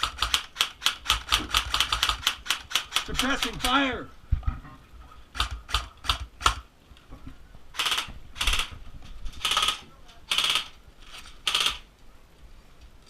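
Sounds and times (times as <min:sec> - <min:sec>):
airsoft rifle shots: 0:00.0 - 0:03.8, 0:05.3 - 0:06.7, 0:07.8 - 0:08.7, 0:09.4 - 0:10.8, 0:11.4 - 0:11.9.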